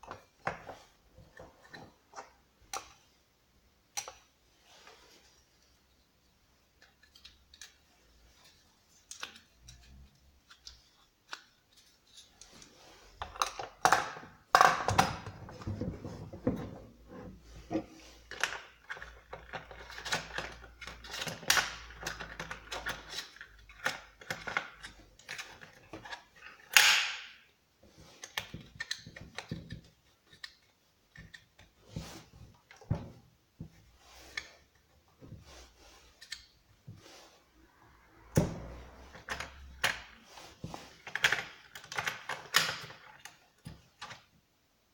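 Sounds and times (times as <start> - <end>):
tools and parts clicking and rattling: 18.2 - 27.4, 28.1 - 31.7, 38.9 - 44.3.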